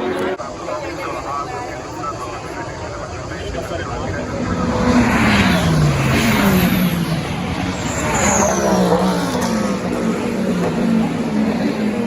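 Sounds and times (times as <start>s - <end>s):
race cars passing at speed: 2.8s - 12.0s.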